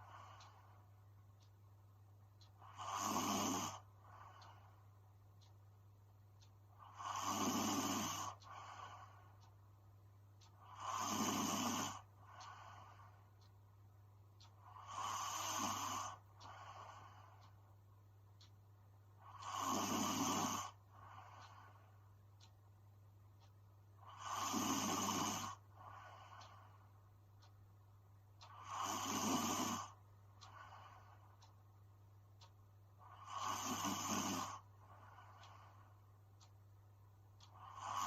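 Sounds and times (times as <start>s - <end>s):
soft breathing: 0.0s - 9.8s, 10.4s - 22.8s, 23.4s - 27.6s, 28.4s - 38.0s
woman snoring: 2.7s - 3.8s, 6.8s - 8.8s, 10.6s - 12.1s, 14.7s - 16.2s, 19.2s - 20.8s, 24.0s - 25.6s, 28.5s - 30.0s, 33.0s - 34.6s, 37.6s - 38.0s.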